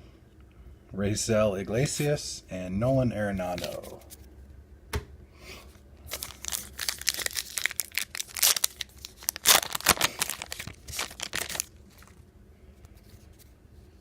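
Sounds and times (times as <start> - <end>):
wrapper tearing and crinkling: 6.1 - 12.2.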